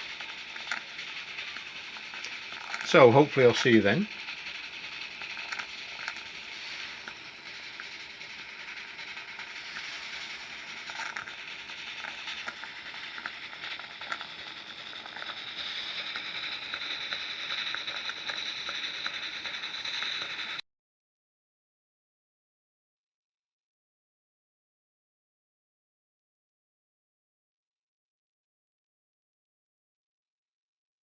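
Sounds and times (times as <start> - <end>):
high steady hissing tone: 0.0 - 20.6
small exhaust clicks: 0.0 - 20.6
steam hissing: 0.0 - 20.6.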